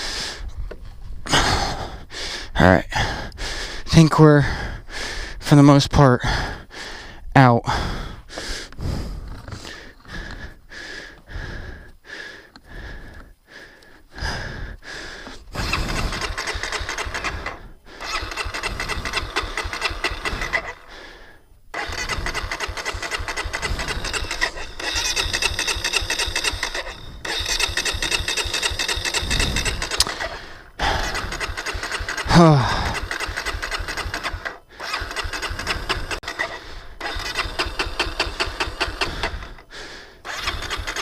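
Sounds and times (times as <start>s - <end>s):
electric starter cranking engine: 15.2s - 41.0s.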